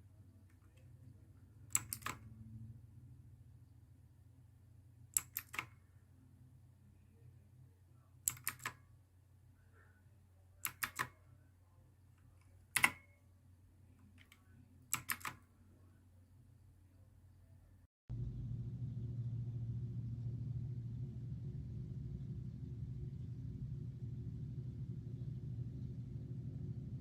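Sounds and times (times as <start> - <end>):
faint low hum: 0.0 - 27.0
mechanical keyboard clicks: 1.7 - 2.3, 5.1 - 5.8, 8.2 - 8.8, 10.6 - 11.2, 12.7 - 13.2, 14.0 - 15.4.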